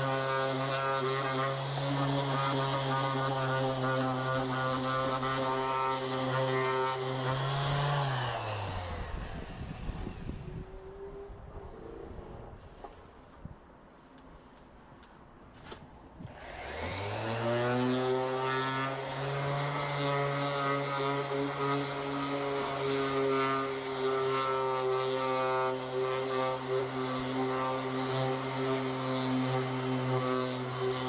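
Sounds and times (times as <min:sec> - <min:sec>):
electric motor spinning up and running: 0:03.8 - 0:11.2, 0:16.3 - 0:31.0.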